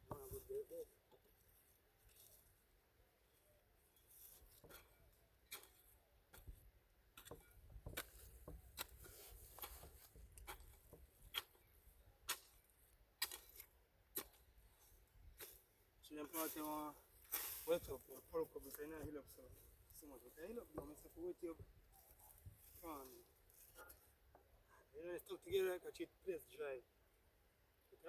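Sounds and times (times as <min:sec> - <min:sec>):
dry soil clicks and scratches: 0:00.0 - 0:24.5.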